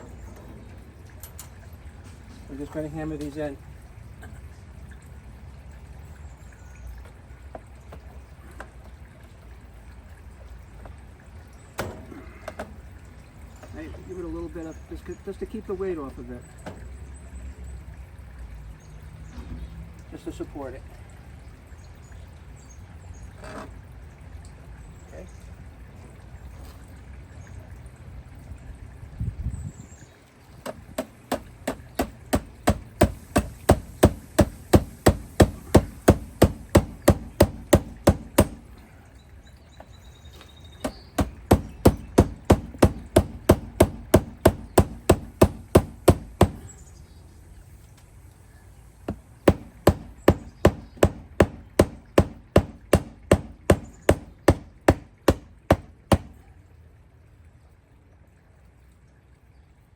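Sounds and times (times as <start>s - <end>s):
hammer driving nails: 30.7s - 38.6s, 40.8s - 46.6s, 49.1s - 56.3s.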